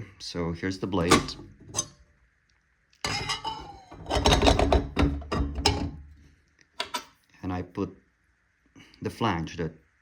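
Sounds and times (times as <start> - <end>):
saw blade clinking and scraping: 3.1 - 4.4.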